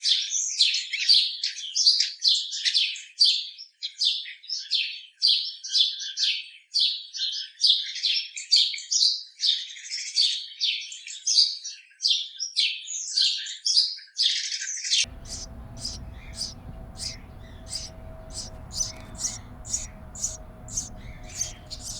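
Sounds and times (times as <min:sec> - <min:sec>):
birds chirping: 0:15.1 - 0:21.9
low background rumble: 0:15.1 - 0:21.9.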